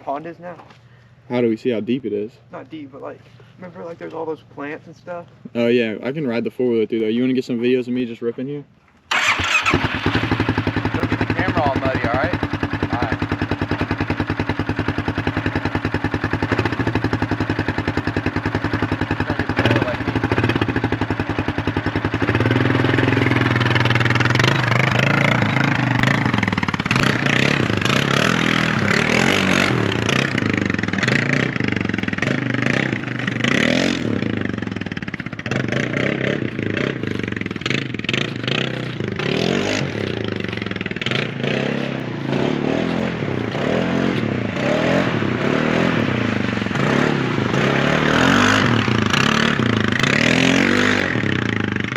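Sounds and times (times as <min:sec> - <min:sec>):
atv engine idling and revving: 0:00.0 - 0:08.2, 0:09.1 - 0:51.9.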